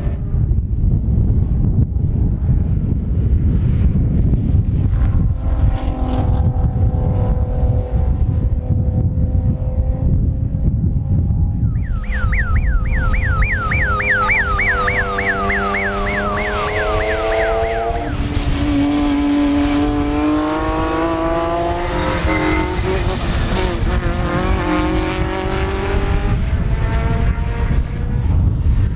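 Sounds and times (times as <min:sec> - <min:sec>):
wind buffeting microphone: 0:00.0 - 0:28.9
racing car engines: 0:04.3 - 0:28.8
high warbling tone: 0:11.6 - 0:18.5.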